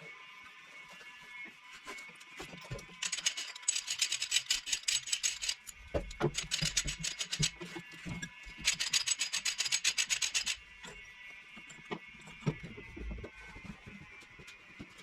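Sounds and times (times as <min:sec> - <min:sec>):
ratchet wrench clicking rapidly: 0:03.0 - 0:07.6, 0:08.6 - 0:10.6.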